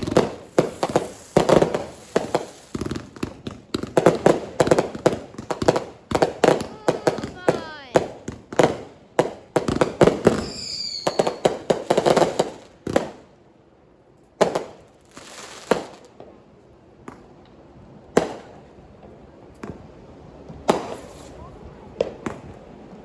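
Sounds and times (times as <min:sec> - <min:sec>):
fireworks bangs and pops: 0:00.0 - 0:13.3, 0:14.4 - 0:16.4, 0:17.0 - 0:18.7, 0:19.6 - 0:23.0
firework whistle: 0:10.3 - 0:11.5.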